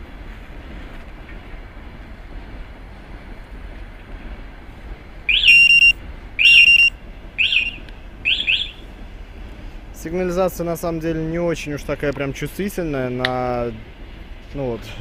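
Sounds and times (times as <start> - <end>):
motorcycle alarm siren whoops: 5.3 - 8.8.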